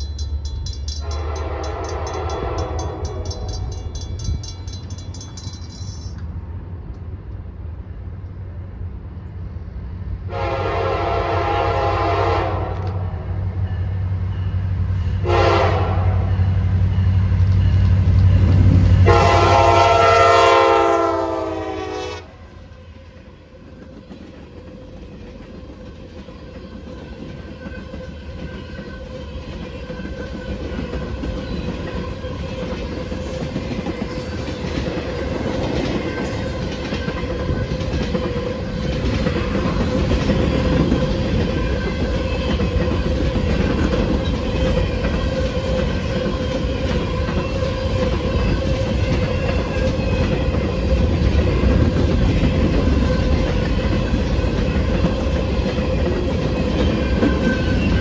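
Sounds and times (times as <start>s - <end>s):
multi-chime train horn: 0.0s - 4.4s, 10.3s - 23.5s
rail cars clickety-clack: 0.0s - 58.0s.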